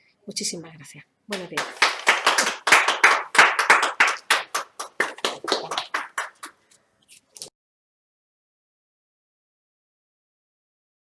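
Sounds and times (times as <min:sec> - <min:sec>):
hands clapping: 0:01.3 - 0:06.6.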